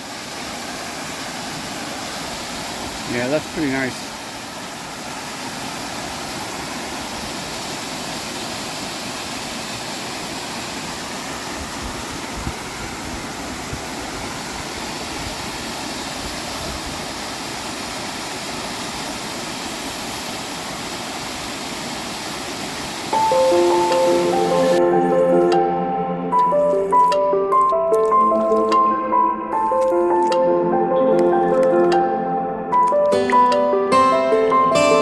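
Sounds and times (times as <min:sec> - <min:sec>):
small waterfall rushing: 0:00.0 - 0:24.8.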